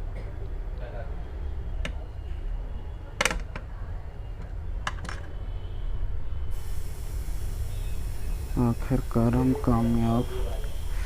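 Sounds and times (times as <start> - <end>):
steady low hum: 5.9 - 11.0.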